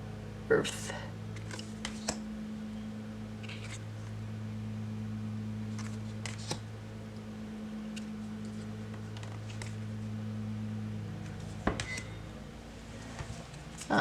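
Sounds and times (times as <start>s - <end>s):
steady low hum: 0.0s - 14.0s
cards swishing and tapping: 1.4s - 2.2s, 3.4s - 4.1s, 5.7s - 6.6s, 7.9s - 9.8s.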